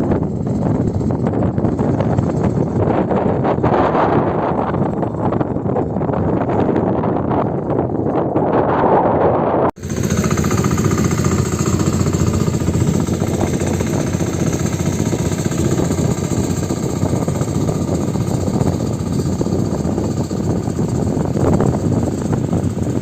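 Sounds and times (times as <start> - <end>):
wind on microphone: 0.0 - 23.0
tractor engine thumping: 9.8 - 23.0.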